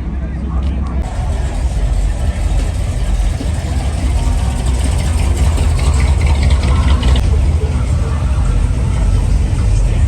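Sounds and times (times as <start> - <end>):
car engine running: 1.0 - 10.0.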